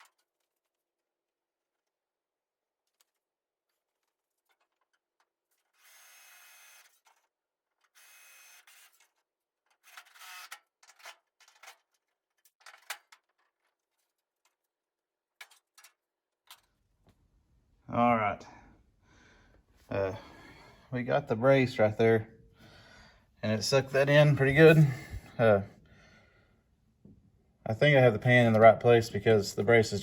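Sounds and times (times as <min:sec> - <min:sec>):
faint scraping: 0:23.5 - 0:25.6.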